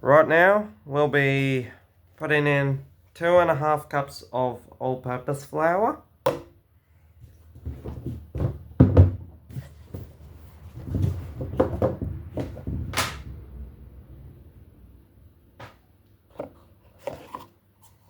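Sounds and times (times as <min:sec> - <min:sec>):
kitchen items knocking and rustling: 0:07.4 - 0:13.4.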